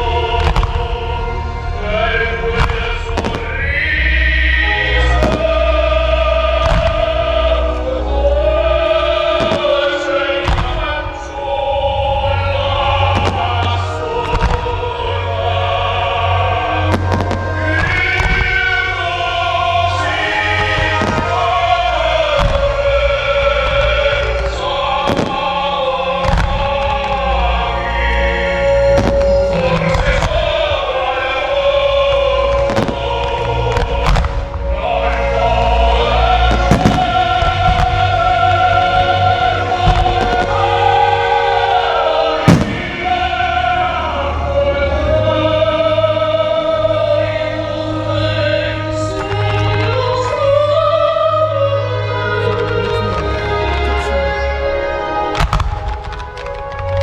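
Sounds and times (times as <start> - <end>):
operatic choir singing: 0.0 - 57.0
fireworks cracking and booming: 0.3 - 1.3, 2.0 - 7.8, 9.1 - 15.2, 16.8 - 35.3, 36.0 - 44.0, 55.2 - 57.0
loud firework burst: 36.4 - 38.3, 42.4 - 43.6
faint crackles: 55.3 - 57.0.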